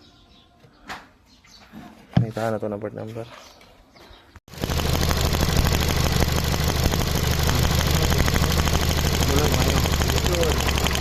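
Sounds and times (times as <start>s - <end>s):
car engine idling: 4.5s - 11.0s.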